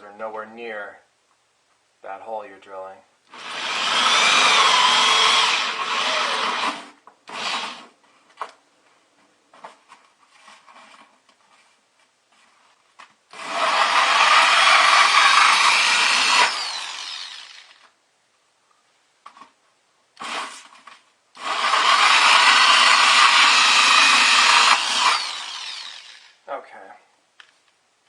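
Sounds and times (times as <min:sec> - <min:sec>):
power drill cutting foam: 0:03.3 - 0:07.9, 0:13.3 - 0:17.9, 0:20.2 - 0:20.7, 0:21.4 - 0:26.4.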